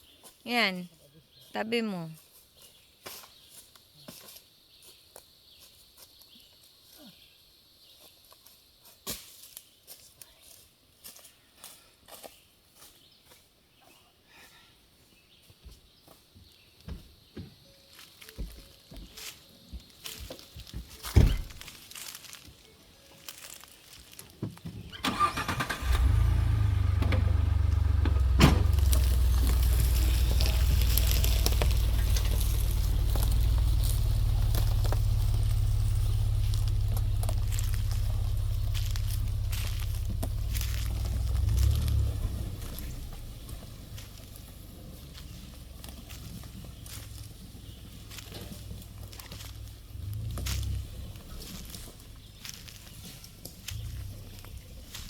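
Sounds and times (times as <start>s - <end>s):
thump: 21.1s - 21.6s, 28.4s - 28.7s
vehicle engine starting and idling: 24.9s - 55.0s.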